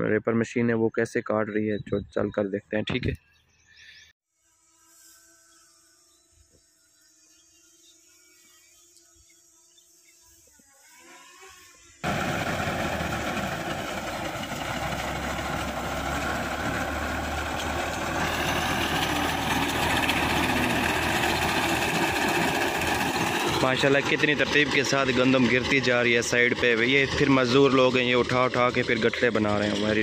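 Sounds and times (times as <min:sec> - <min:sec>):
reaper cutting wheat: 0:11.4 - 0:28.0
tractor engine running: 0:12.0 - 0:30.0.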